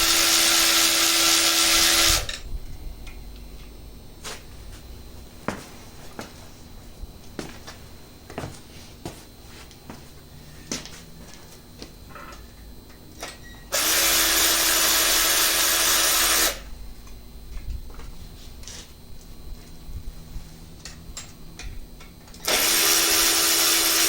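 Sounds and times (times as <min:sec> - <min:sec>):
handheld power tool running: 0:00.0 - 0:02.4, 0:13.7 - 0:16.7, 0:22.3 - 0:24.0.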